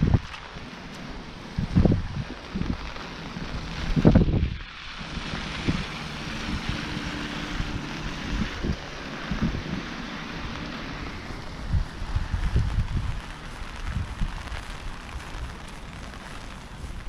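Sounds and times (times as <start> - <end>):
rain hiss: 0.0 - 17.0
wind buffeting microphone: 0.0 - 17.0.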